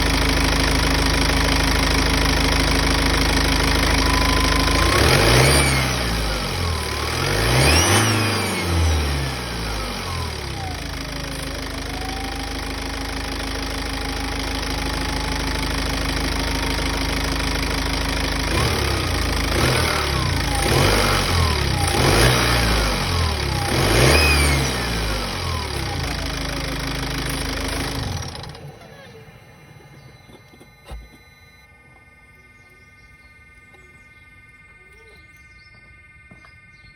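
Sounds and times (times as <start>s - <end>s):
diesel engine idling and revving: 0.0s - 36.9s
thin whistling whine: 28.8s - 36.9s.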